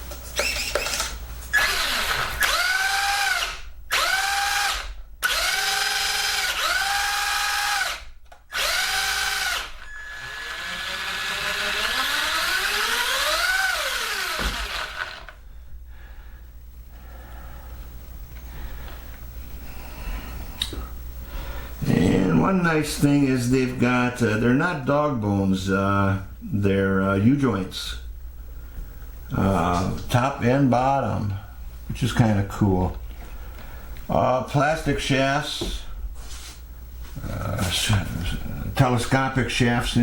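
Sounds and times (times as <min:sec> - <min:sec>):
electric motor whining: 0:01.6 - 0:15.4.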